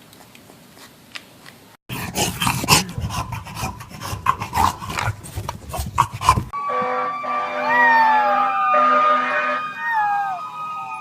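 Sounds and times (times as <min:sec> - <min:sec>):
dog rasping and scuffling: 0:00.2 - 0:06.5.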